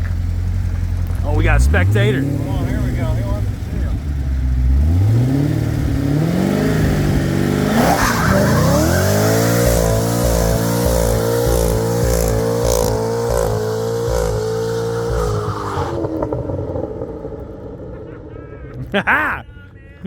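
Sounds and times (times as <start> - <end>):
engine revving at high revs: 1.4 - 3.9, 4.5 - 16.4.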